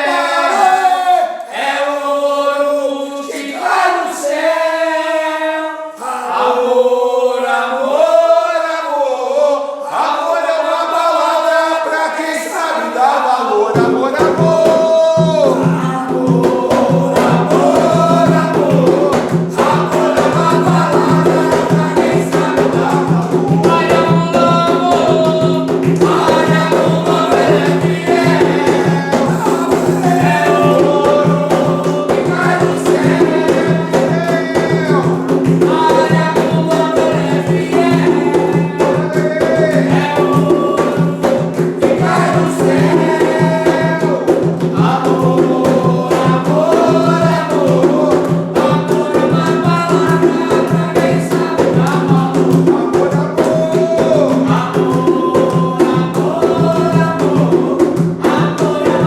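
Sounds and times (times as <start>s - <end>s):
group chanting: 0.0s - 59.0s
hand percussion beat: 13.7s - 59.0s.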